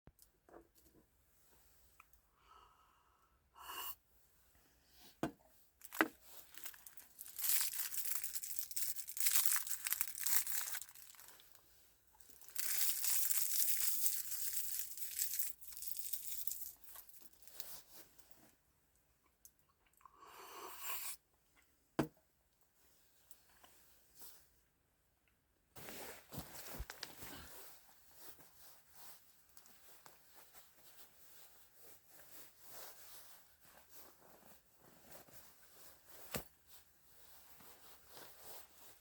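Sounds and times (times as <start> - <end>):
material rustling and tearing: 5.8 - 11.6, 12.2 - 18.0.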